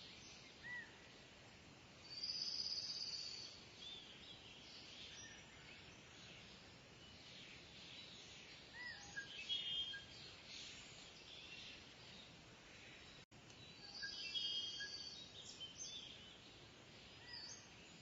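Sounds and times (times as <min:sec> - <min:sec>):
outdoor background hiss: 0:00.0 - 0:18.0.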